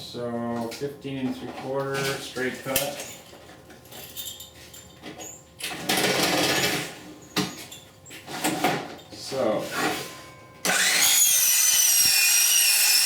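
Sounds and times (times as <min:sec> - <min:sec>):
circular saw cutting vinyl siding: 0:10.7 - 0:13.0.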